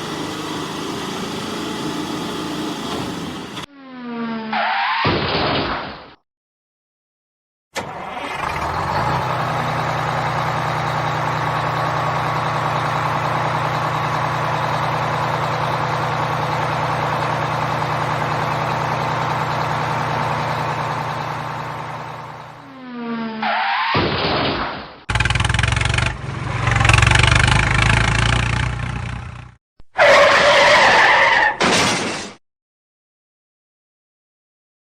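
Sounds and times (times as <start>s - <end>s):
vehicle engine running: 0.0s - 3.7s, 8.6s - 22.8s, 25.1s - 29.6s.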